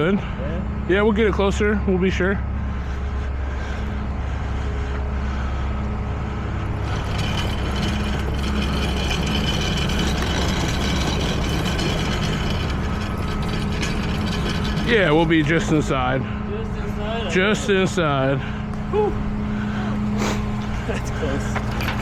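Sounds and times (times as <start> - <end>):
tow truck engine running: 0.0 - 22.0
mechanical clatter of gears: 6.7 - 15.9, 20.8 - 22.0.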